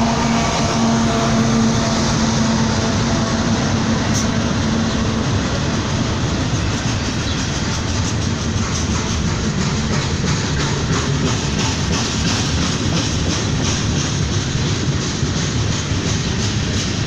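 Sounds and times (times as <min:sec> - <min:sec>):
freight train rumbling past: 0:00.0 - 0:17.0.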